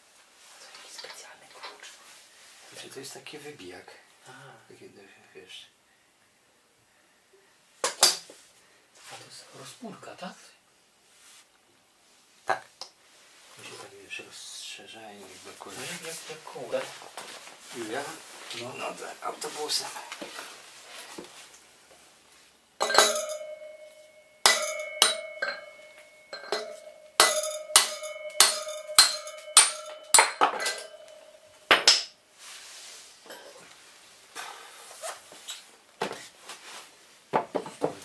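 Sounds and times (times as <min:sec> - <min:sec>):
faint metal handling: 0:22.8 - 0:31.7
hammer striking metal punch: 0:22.8 - 0:32.1.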